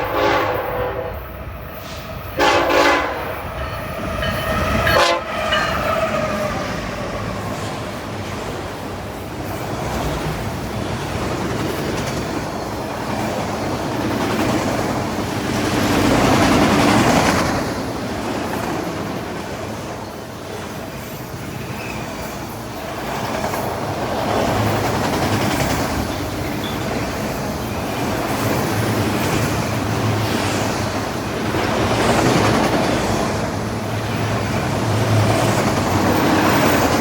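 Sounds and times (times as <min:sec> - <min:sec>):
train wheels roaring on rails: 0:00.0 - 0:37.0.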